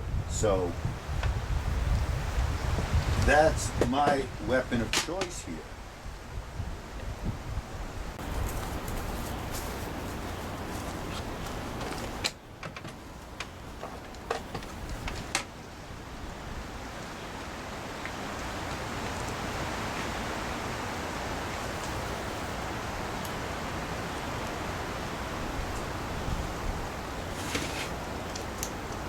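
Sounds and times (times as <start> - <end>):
steady hiss: 0.0 - 6.1, 8.1 - 29.0
clicks and taps of hand tools: 4.9 - 5.3.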